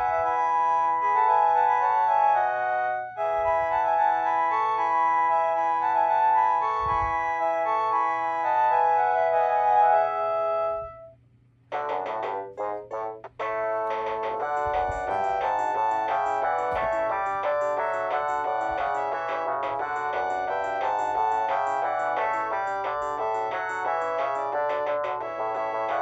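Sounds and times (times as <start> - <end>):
melodic electronic ringtone: 0.0 - 11.0, 11.7 - 26.0
faint low hum: 6.4 - 26.0.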